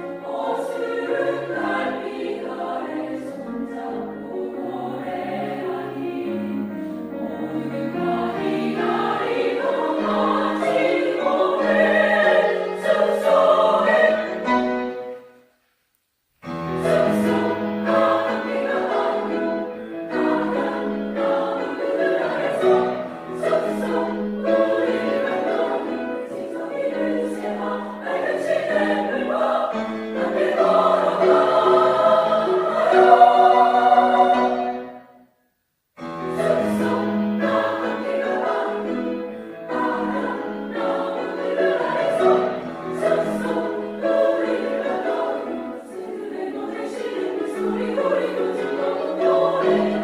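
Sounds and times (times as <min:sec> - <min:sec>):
women's choir singing: 0:00.0 - 0:15.4, 0:16.8 - 0:35.2, 0:36.3 - 0:50.0.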